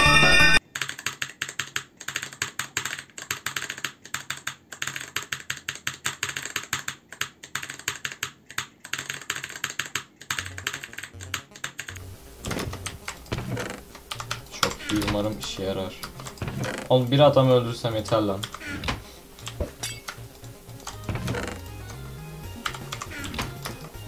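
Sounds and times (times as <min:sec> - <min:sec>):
burst of music: 0:00.0 - 0:00.6
mechanical keyboard clicks: 0:00.6 - 0:13.3, 0:13.9 - 0:16.4, 0:18.0 - 0:18.6, 0:19.4 - 0:22.0, 0:22.6 - 0:23.9.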